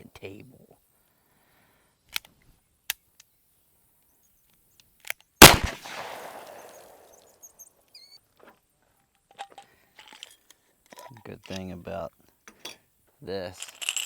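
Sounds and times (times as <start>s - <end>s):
loud sharp gunshot: 5.4s - 7.0s.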